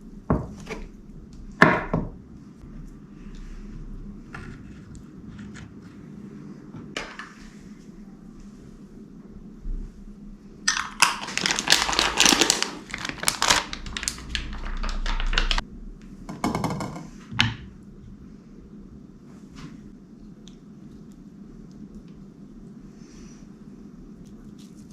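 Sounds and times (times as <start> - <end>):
food wrapping crinkling: 10.7 - 15.6.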